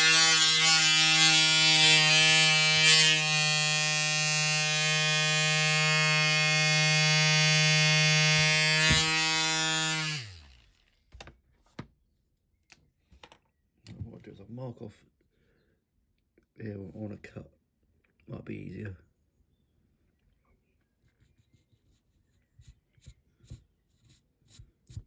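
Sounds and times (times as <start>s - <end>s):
rotary tool cutting metal: 0.0s - 10.6s.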